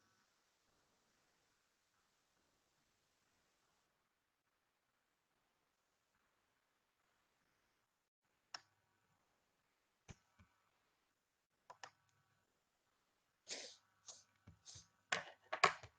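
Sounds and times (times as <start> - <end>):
keyboard and mouse clicks: 11.6 - 12.2, 14.4 - 15.9.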